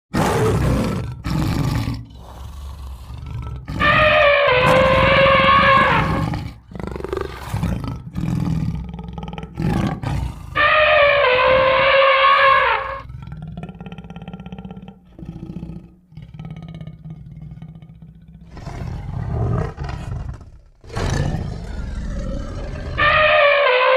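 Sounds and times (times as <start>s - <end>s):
shorter animal calls: 3.7s - 6.2s, 22.6s - 23.9s
long loud animal calls: 3.7s - 6.5s, 10.1s - 13.1s, 20.9s - 23.9s.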